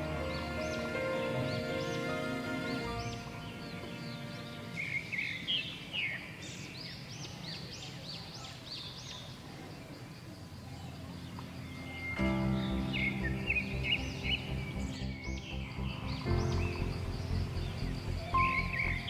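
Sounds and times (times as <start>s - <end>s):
background music: 0.0s - 5.4s, 11.3s - 19.0s
birds chirping: 0.0s - 19.0s.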